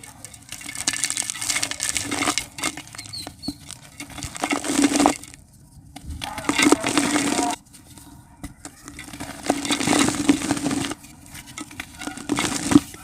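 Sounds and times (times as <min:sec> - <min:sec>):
dry dirt crunching: 0:00.0 - 0:13.0.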